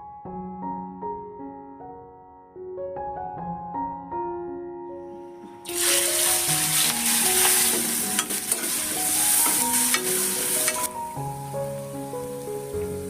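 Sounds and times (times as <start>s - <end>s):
food sizzling in hot oil: 5.6s - 13.0s
utensil clicking against pan: 7.4s - 10.9s.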